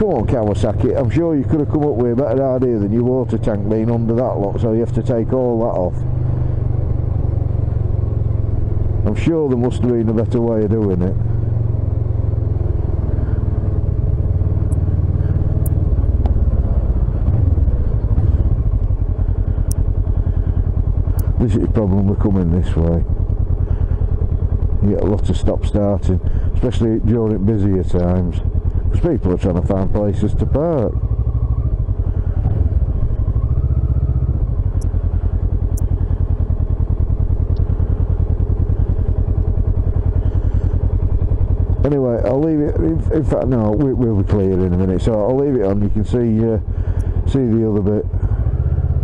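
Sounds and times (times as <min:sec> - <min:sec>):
motorcycle engine at low speed: 0:00.0 - 0:49.0
faint clicks: 0:37.5 - 0:37.7.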